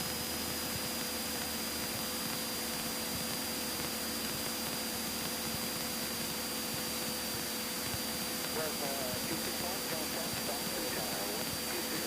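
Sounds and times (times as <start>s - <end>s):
faint constant tones: 0.0s - 12.0s
low hum: 0.1s - 12.0s
steady cockpit hiss: 7.6s - 12.0s.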